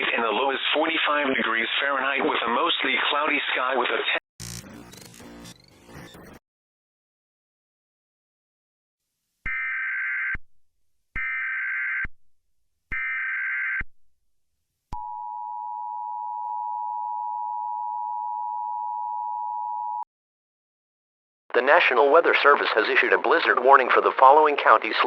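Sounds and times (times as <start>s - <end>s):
digital data screech bursts: 4.4s - 6.4s.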